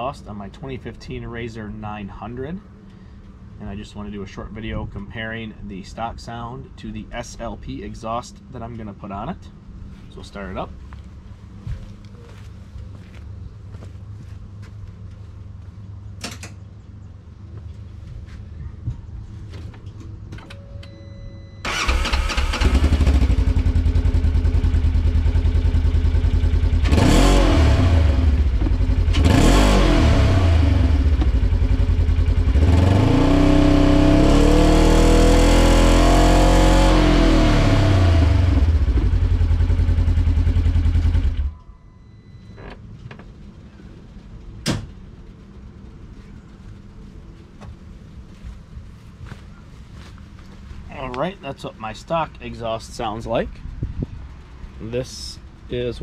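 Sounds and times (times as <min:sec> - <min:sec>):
engine idling and revving: 0:21.6 - 0:41.6.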